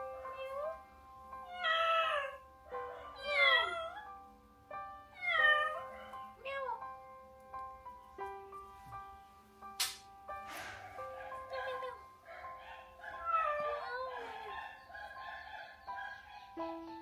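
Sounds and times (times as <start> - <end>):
piano music: 0.0 - 17.0
kitten meowing: 3.2 - 4.1, 5.2 - 6.9.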